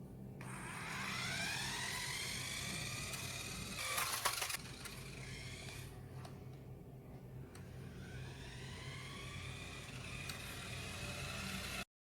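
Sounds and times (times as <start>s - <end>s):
toy car electric motor whining: 0.4s - 5.9s, 7.8s - 11.9s.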